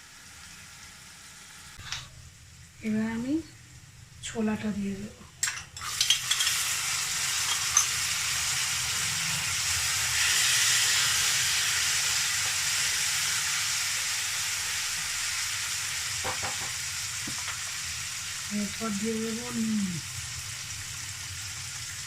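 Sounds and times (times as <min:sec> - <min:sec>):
chickpeas sizzling in oil: 0:05.4 - 0:22.0.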